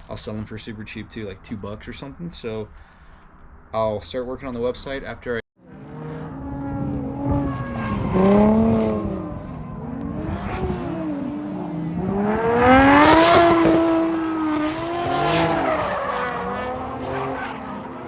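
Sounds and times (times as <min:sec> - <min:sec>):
car engine revving: 0:05.6 - 0:18.0
tires squealing: 0:05.6 - 0:18.0.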